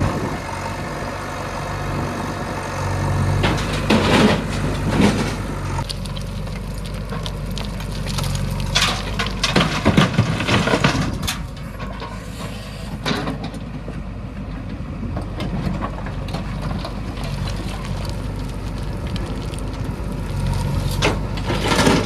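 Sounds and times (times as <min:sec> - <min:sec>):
diesel engine running at low revs: 0:00.0 - 0:22.0.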